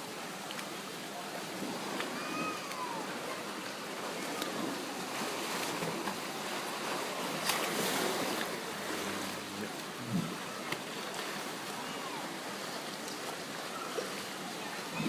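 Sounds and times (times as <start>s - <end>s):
water sloshing and splashing: 0.0s - 15.0s.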